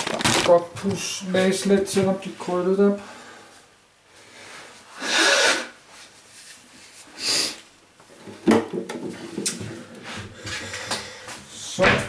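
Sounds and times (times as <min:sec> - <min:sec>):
person blowing nose into tissue: 0:04.9 - 0:05.8, 0:07.0 - 0:07.6.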